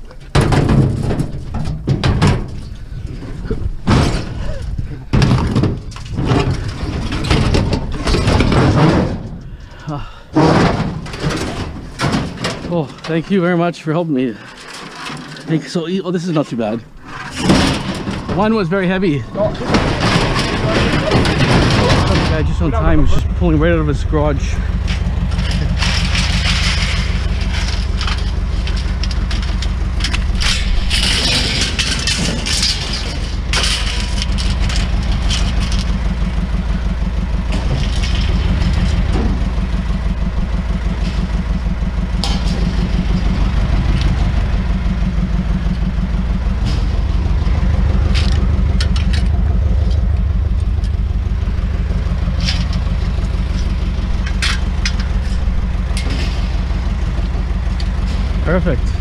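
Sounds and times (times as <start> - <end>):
scrap metal knocking and clattering: 0.0 - 59.0
truck engine running: 0.0 - 59.0.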